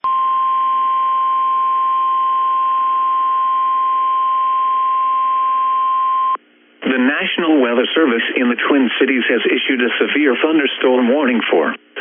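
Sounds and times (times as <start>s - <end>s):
faint radio hiss: 6.4s - 12.0s.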